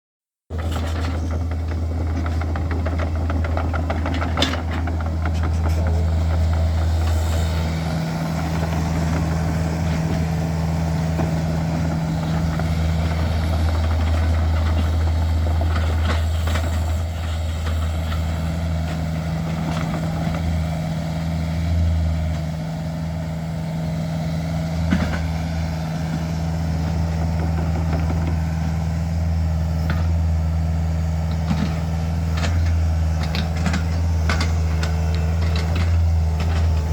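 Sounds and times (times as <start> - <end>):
excavator diesel engine running: 0.5 - 36.9.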